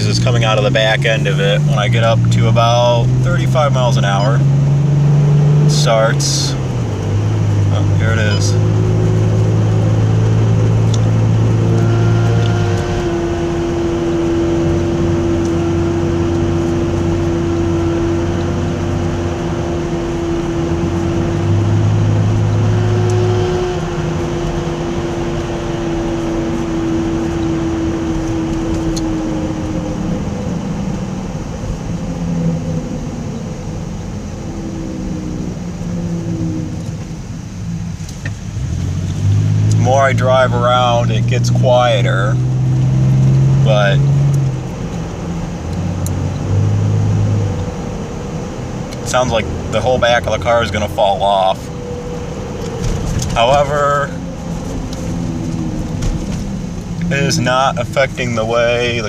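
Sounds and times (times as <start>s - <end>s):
droning axle whine: 0.0s - 59.0s
road noise: 0.0s - 59.0s.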